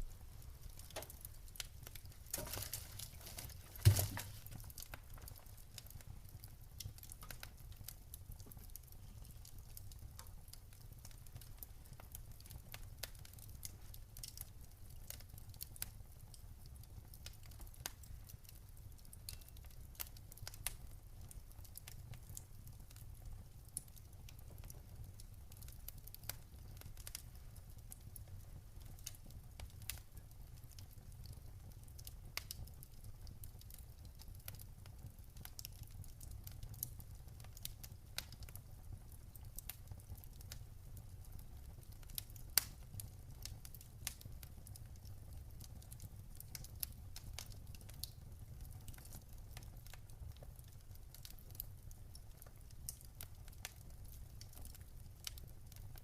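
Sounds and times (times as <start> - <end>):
fire crackling and snapping: 0.0 - 56.0
low fire rumble: 0.0 - 56.0
loud fire pop: 3.7 - 4.5.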